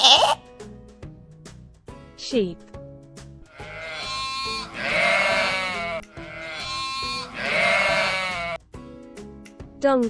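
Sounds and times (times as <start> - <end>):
sheep bleating: 0.0 - 0.4, 3.5 - 8.6
light background music: 0.0 - 10.0.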